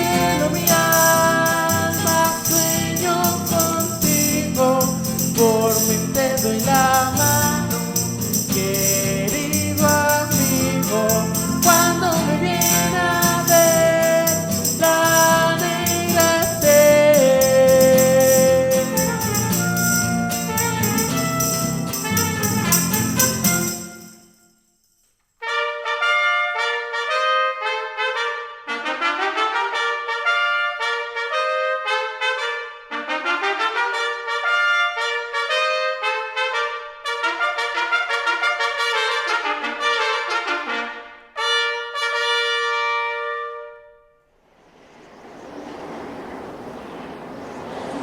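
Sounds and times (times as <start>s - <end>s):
brass ensemble playing: 0.0s - 4.0s, 9.8s - 24.2s, 25.4s - 43.7s.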